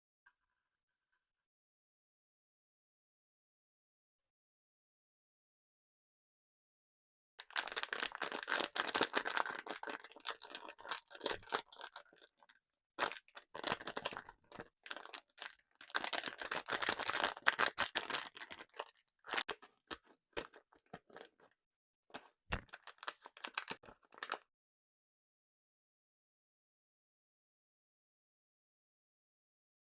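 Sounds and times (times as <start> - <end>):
crunching hard candy: 7.4 - 21.4, 22.2 - 24.4.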